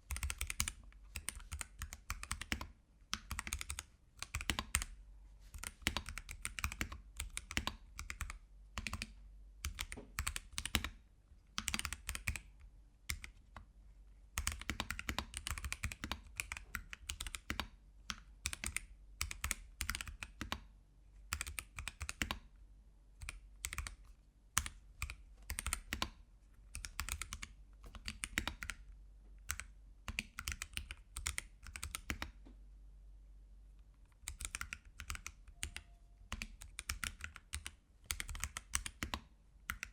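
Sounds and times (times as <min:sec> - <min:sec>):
typing on mechanical keyboard: 0:00.0 - 0:13.7, 0:14.4 - 0:20.6, 0:21.3 - 0:22.5, 0:23.2 - 0:32.4, 0:34.1 - 0:39.9.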